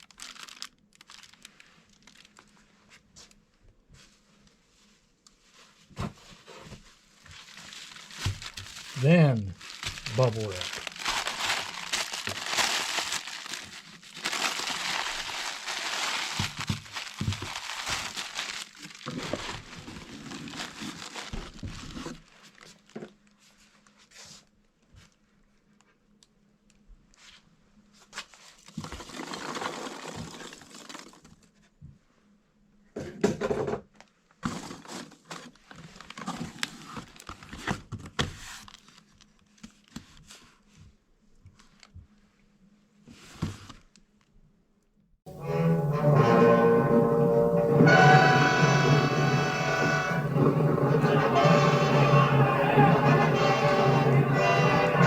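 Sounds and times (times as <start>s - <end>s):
bubble wrap crinkling: 0.0s - 3.0s, 7.0s - 23.0s.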